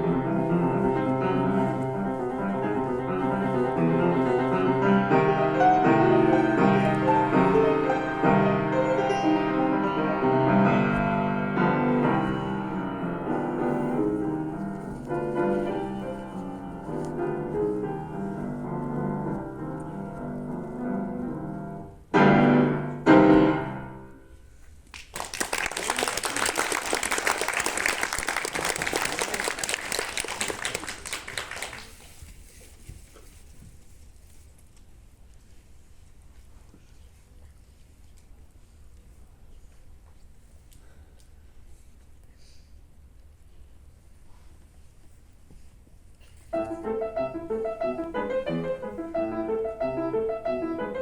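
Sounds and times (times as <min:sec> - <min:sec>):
solo piano: 0:00.0 - 0:24.3, 0:46.5 - 0:51.0
audience applause: 0:24.9 - 0:32.2.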